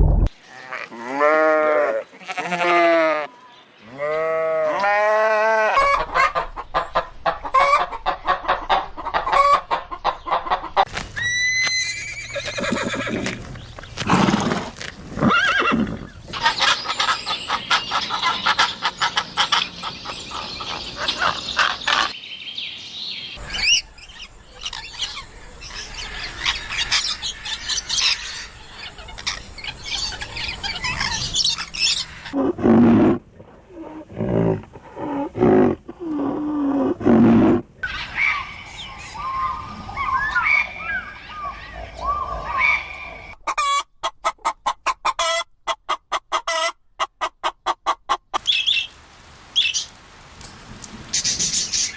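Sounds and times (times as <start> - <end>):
chickens clucking: 5.8 - 10.9, 16.3 - 22.2, 42.4 - 48.4.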